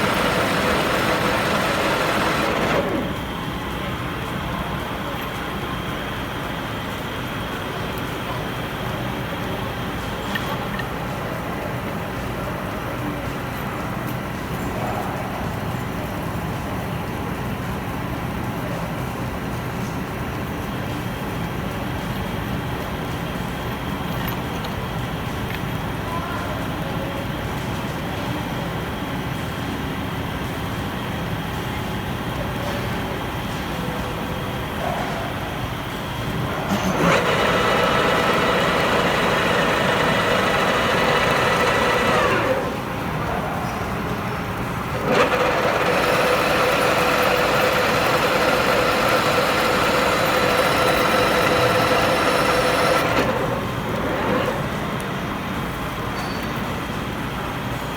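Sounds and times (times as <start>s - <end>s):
lathe humming: 0.0s - 4.0s, 36.7s - 43.3s, 44.4s - 55.2s.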